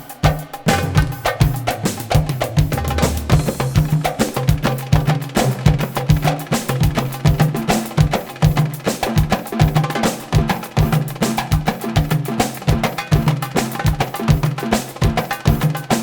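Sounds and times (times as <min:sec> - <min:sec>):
goblet drum solo: 0:00.0 - 0:16.0.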